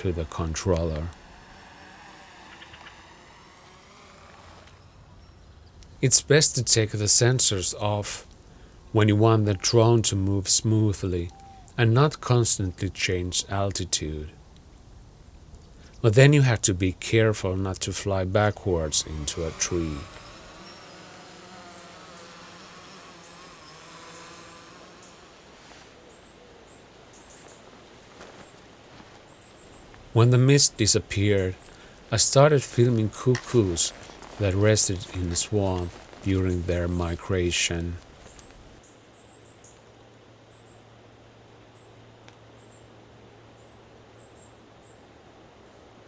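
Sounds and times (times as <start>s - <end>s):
soft low hum: 13.4s - 29.0s.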